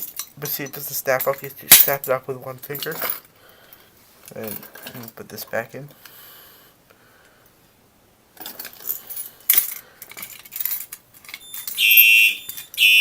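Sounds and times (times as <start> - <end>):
metal clicks and key rattles: 8.4 - 12.8
pulsing electronic alarm horn: 11.8 - 13.0.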